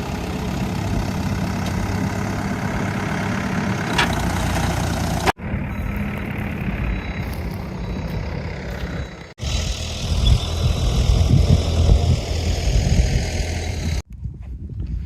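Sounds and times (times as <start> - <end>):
engine running: 0.0 - 14.0.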